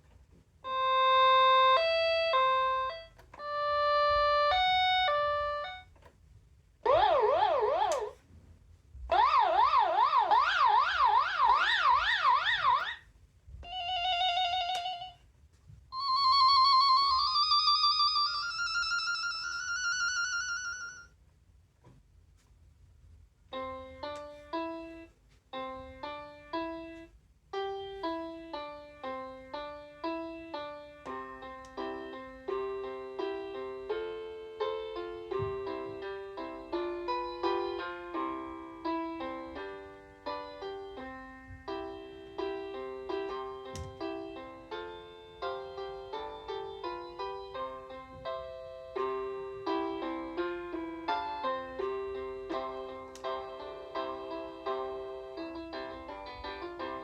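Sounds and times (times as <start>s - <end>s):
toy keyboard tune: 0.6s - 6.0s, 16.0s - 21.1s, 27.6s - 57.0s
toy keyboard siren effect: 0.7s - 5.9s, 6.9s - 8.2s, 9.1s - 13.0s, 16.0s - 21.1s
toy keyboard tones: 0.7s - 5.9s.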